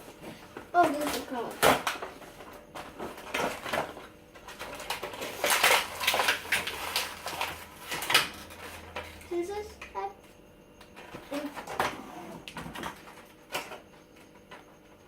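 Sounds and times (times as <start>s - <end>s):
packaging rustling and scraping: 0.0s - 9.2s.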